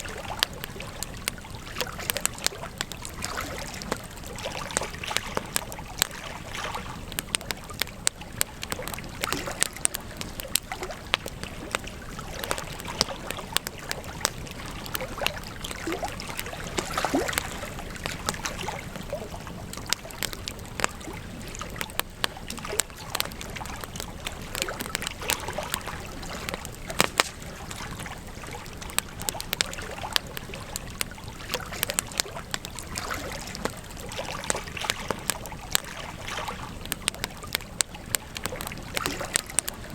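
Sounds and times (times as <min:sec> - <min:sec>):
campfire crackling and popping: 0:00.0 - 0:39.9.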